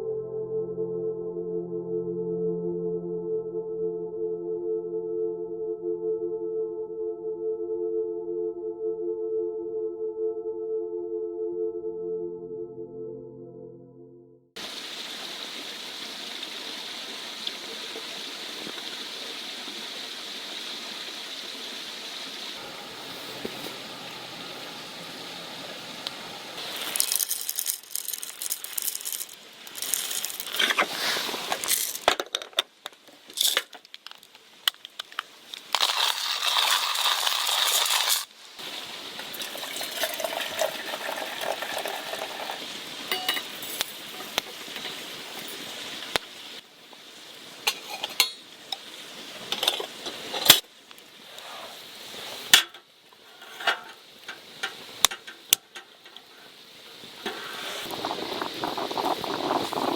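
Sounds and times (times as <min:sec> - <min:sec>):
steady hiss: 0:14.6 - 0:59.9
cookware and utensils clinking: 0:39.2 - 0:45.7, 0:47.7 - 0:48.8, 0:49.4 - 0:50.6, 0:52.5 - 0:56.2.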